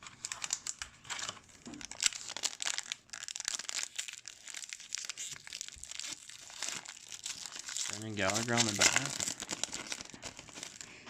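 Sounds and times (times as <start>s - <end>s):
plastic wrapper crinkling and tearing: 0.0s - 11.0s.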